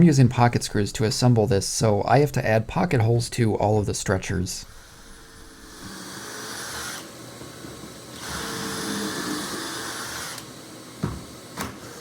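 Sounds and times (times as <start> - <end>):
drill whining: 4.6 - 12.0
knock: 11.0 - 11.7.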